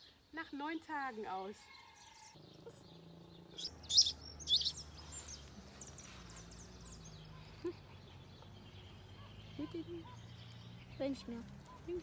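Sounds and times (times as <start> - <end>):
baby bird cheeping: 3.6 - 4.9.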